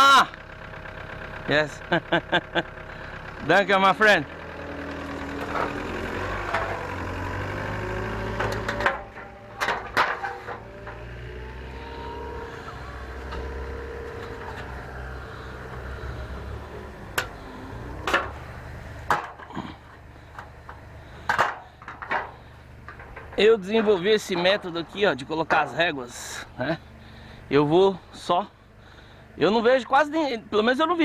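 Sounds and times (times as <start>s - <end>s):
vehicle engine humming: 0.0s - 31.0s
knocks of hard objects: 19.1s - 19.7s.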